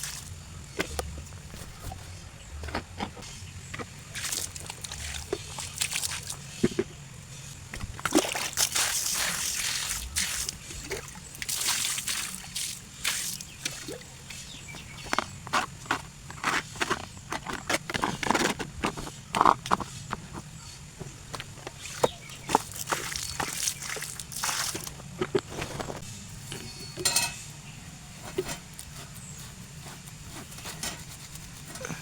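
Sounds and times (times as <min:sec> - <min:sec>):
water sloshing and splashing: 0:02.7 - 0:06.9, 0:07.7 - 0:14.2, 0:21.6 - 0:26.0
scrubbing: 0:21.7 - 0:26.0, 0:28.1 - 0:32.0.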